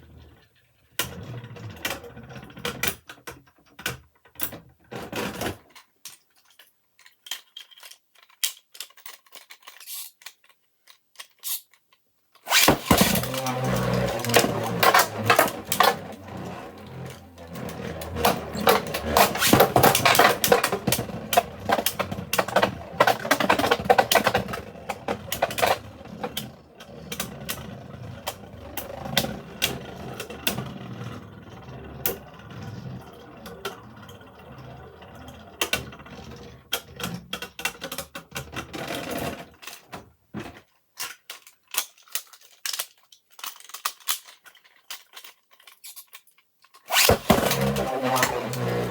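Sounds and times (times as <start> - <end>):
spinning tops whirring: 12.5 - 34.3, 46.9 - 48.9.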